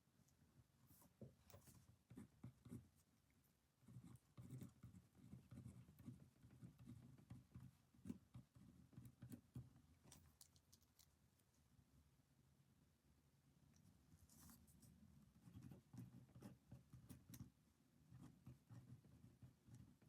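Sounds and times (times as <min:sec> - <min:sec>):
pen writing on paper: 0:03.8 - 0:09.6.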